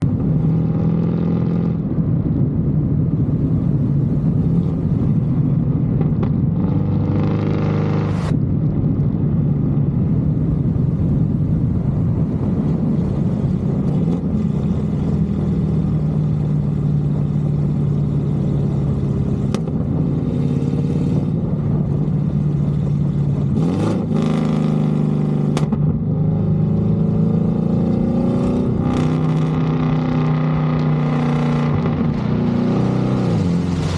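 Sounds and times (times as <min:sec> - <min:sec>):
exhaust pops and crackles: 0:08.1 - 0:26.0, 0:28.8 - 0:32.6
car exhaust revving: 0:09.1 - 0:33.9.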